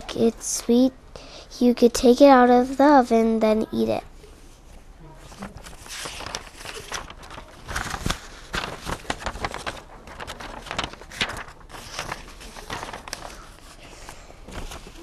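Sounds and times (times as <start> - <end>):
rustling: 4.3 - 15.0.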